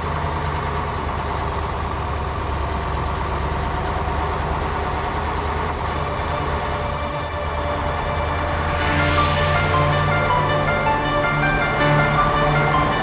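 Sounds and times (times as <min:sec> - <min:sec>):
steady musical tones: 0:05.8 - 0:13.0.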